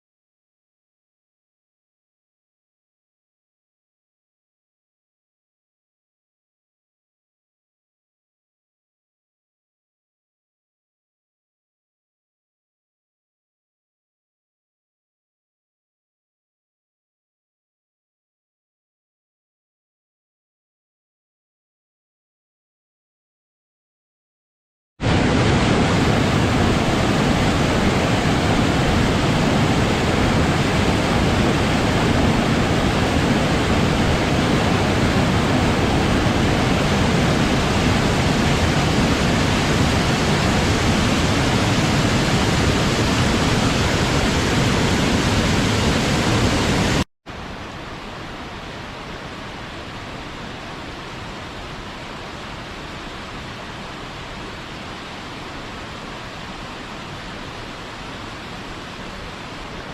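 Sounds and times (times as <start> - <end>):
waterfall rushing: 25.0 - 59.9.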